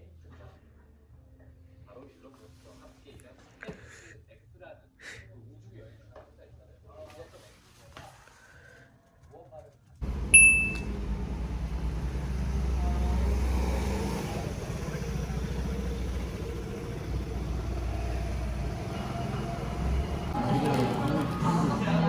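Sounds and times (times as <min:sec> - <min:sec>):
low mechanical rumble: 0:10.0 - 0:22.0
short electronic beep: 0:10.3 - 0:10.9.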